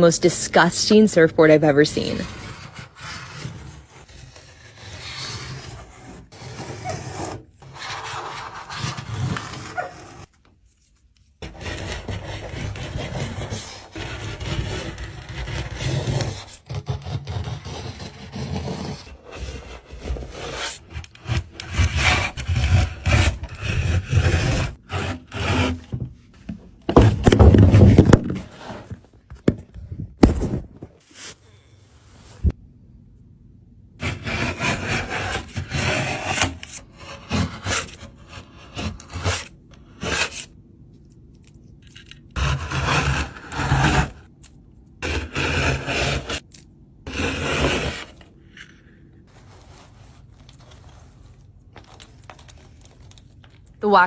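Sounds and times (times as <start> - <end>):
wax scraped off surfboard: 2.1 - 17.0, 47.1 - 51.5.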